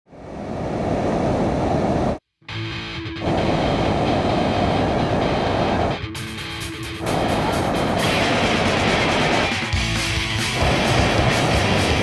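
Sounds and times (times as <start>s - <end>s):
distorted electric guitar: 2.5s - 12.0s.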